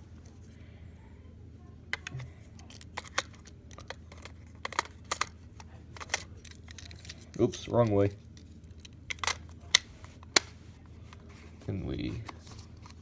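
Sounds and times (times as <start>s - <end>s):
plastic toy parts clicking: 2.0s - 5.3s, 6.0s - 7.4s, 8.8s - 10.5s.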